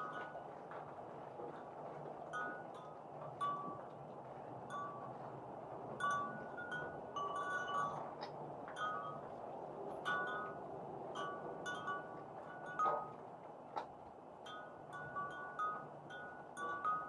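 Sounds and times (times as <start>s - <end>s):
wind chimes tinkling: 6.0s - 9.4s, 10.0s - 13.2s, 14.5s - 17.0s.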